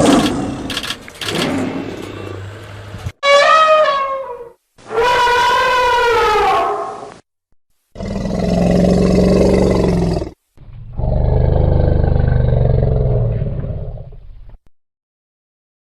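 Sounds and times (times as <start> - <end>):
lion roaring: 0.0 - 2.4, 8.0 - 14.2.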